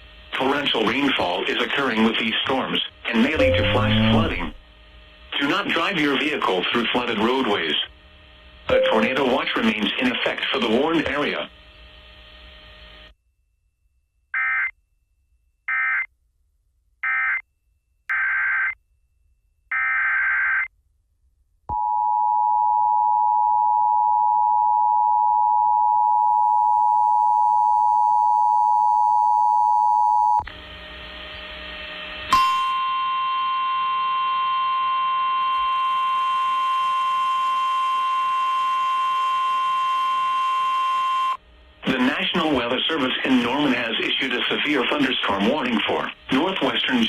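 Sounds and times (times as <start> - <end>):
noise: 0.0 - 13.2, 41.2 - 47.0
steady alarm tone: 3.2 - 4.6, 8.7 - 9.9
two-tone attention signal: 3.4 - 4.6, 8.7 - 9.6
warbling data bursts: 3.4 - 4.6.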